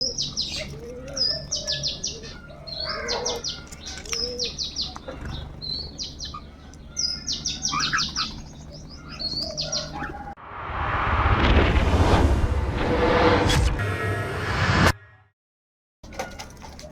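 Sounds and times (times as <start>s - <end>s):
gliding bird call notes: 5.6s - 10.4s.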